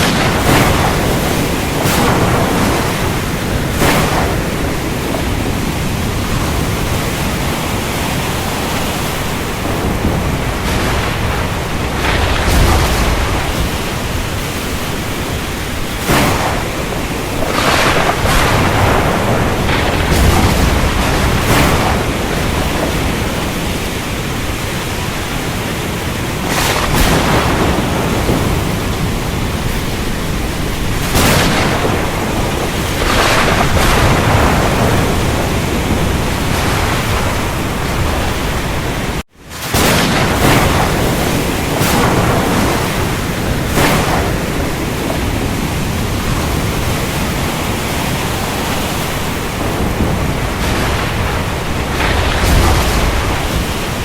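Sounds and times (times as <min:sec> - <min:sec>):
heavy rain hiss: 0:00.0 - 0:54.0
thunder cracks and rumbles: 0:00.0 - 0:54.0.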